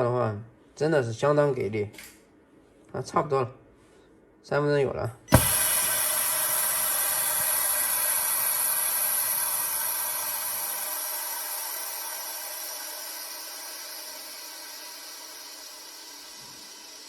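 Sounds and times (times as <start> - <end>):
pressure chamber click: 5.3 - 7.6
compressed air hissing: 5.3 - 17.0.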